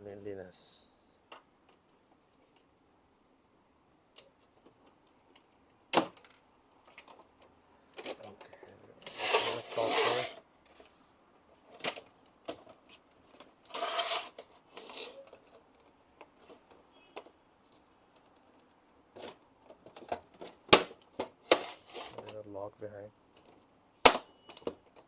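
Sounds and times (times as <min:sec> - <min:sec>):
plastic scraping on plastic: 0:08.0 - 0:10.9, 0:11.6 - 0:17.3, 0:19.1 - 0:22.4.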